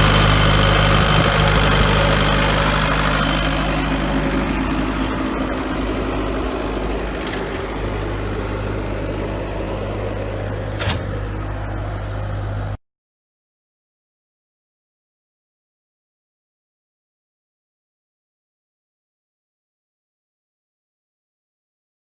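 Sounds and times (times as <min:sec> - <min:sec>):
diesel engine idling: 0:00.0 - 0:12.8
higher-pitched engine noise: 0:00.0 - 0:12.8.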